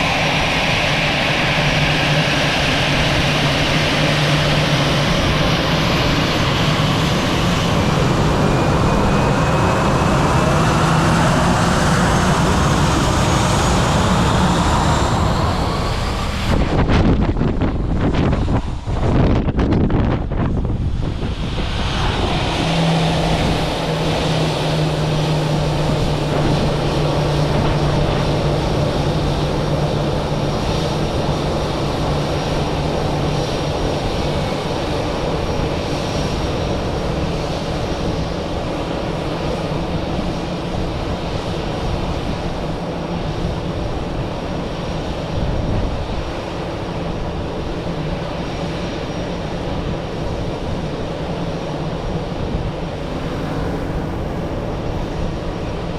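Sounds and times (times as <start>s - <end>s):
low hum: 0.0s - 35.9s, 52.9s - 55.9s
jet engines at takeoff power: 0.0s - 55.9s.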